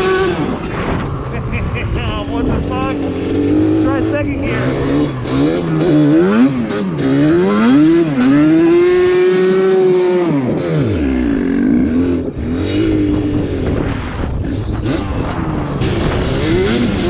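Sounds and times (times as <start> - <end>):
two-stroke engine revving: 0.0 - 17.0.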